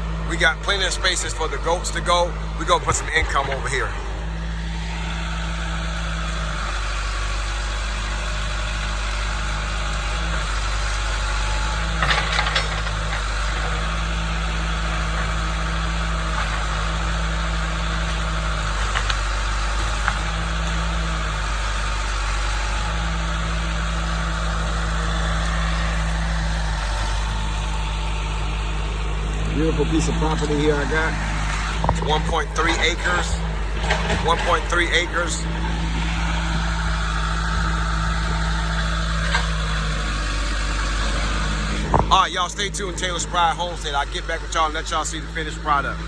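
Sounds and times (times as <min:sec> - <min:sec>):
diesel engine running: 0:00.0 - 0:46.0
metal clanks: 0:12.0 - 0:13.8, 0:30.0 - 0:35.0.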